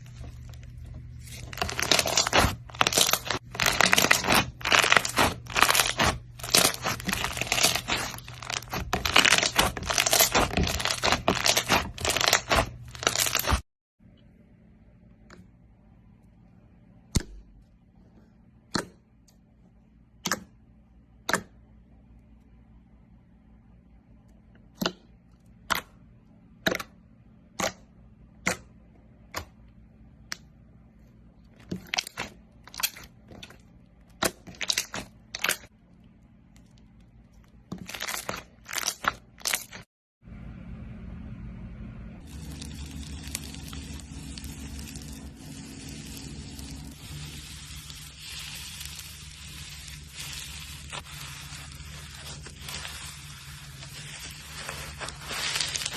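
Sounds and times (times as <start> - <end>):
steady fizzing crackle: 42.3 - 55.9.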